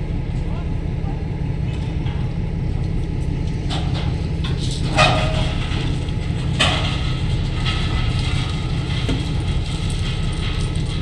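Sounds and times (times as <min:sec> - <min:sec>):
train rumbling: 0:00.0 - 0:11.0.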